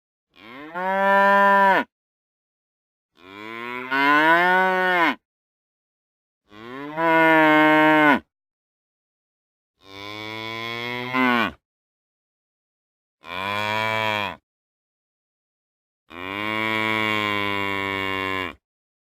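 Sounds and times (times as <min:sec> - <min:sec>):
cattle mooing: 0:00.4 - 0:01.9, 0:03.2 - 0:05.2, 0:06.5 - 0:08.2, 0:09.9 - 0:11.6, 0:16.1 - 0:18.6.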